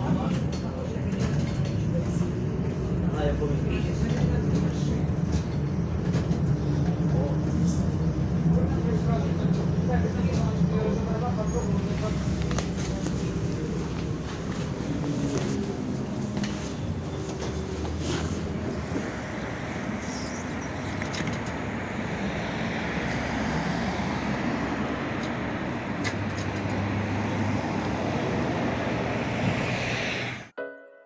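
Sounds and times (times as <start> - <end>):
trolleybus running and road noise: 0.0 - 30.5
music: 30.5 - 31.0.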